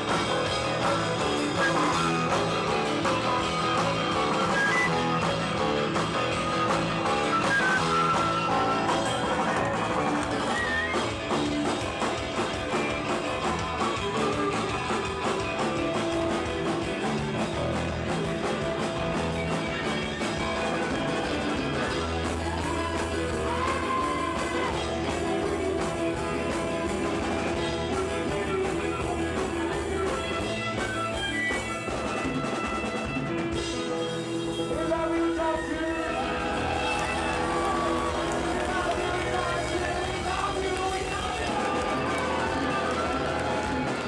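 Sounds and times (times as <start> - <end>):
rock music: 0.0 - 44.0.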